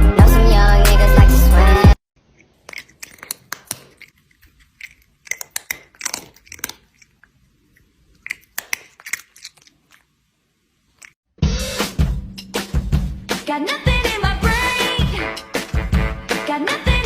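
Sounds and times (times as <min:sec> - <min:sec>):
crunchy chewing: 0:02.2 - 0:10.2, 0:10.9 - 0:11.2.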